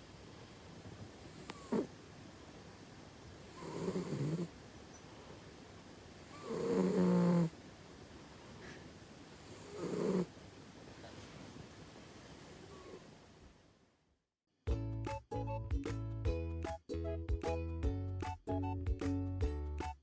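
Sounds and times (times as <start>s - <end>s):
cat snoring: 1.1s - 2.1s, 3.4s - 5.6s, 6.2s - 7.7s, 8.5s - 10.5s.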